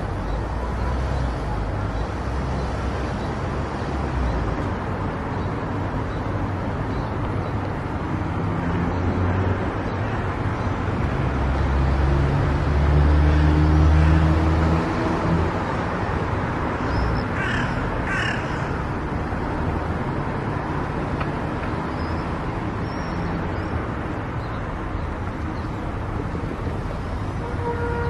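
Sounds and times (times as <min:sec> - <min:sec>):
road traffic noise: 0:00.0 - 0:28.0
crow cawing: 0:17.4 - 0:18.9.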